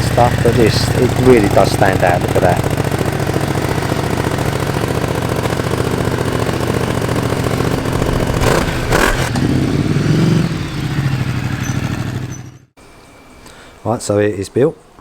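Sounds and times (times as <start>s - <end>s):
motorcycle engine idling and revving: 0.0s - 12.8s.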